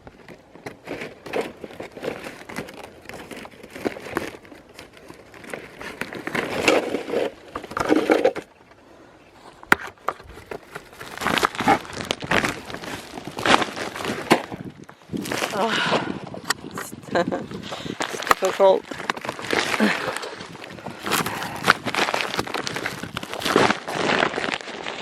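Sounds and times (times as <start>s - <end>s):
plastic bags crinkling: 0.3s - 8.6s, 10.0s - 25.0s.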